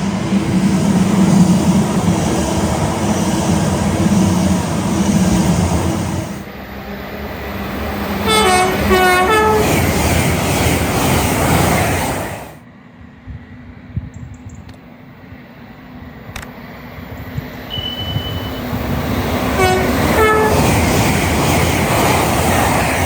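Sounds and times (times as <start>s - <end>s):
passing train rumble: 0.0s - 14.1s, 14.8s - 23.0s
two-tone train horn: 8.2s - 9.7s, 17.7s - 18.7s, 19.6s - 20.7s.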